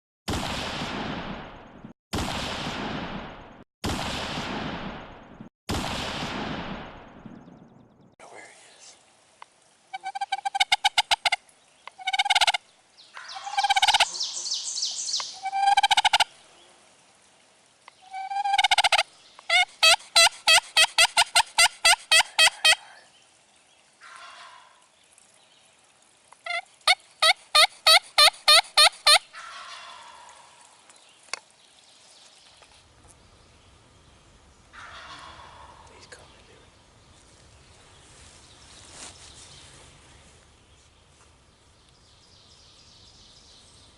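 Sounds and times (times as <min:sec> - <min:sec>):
turkey gobbling: 0:09.9 - 0:11.4, 0:13.2 - 0:14.5, 0:18.1 - 0:22.9, 0:24.0 - 0:24.7, 0:26.4 - 0:30.4, 0:34.8 - 0:35.9
rapid turkey calls: 0:09.9 - 0:12.6, 0:13.2 - 0:16.3, 0:18.1 - 0:23.0, 0:24.0 - 0:24.8, 0:26.4 - 0:30.7, 0:34.7 - 0:36.0.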